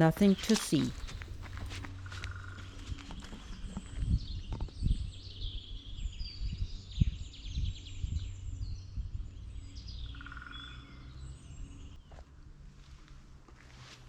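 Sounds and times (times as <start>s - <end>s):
footsteps on path: 0.0s - 3.0s
songbirds singing and chirping: 3.8s - 12.0s.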